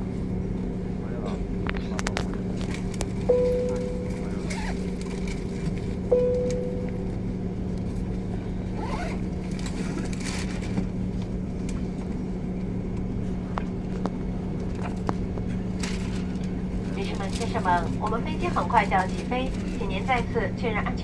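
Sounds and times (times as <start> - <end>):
aircraft cabin hum: 0.0 - 21.0
chime ding: 3.3 - 4.3, 6.1 - 7.0
small clicks and rustles: 15.8 - 16.5.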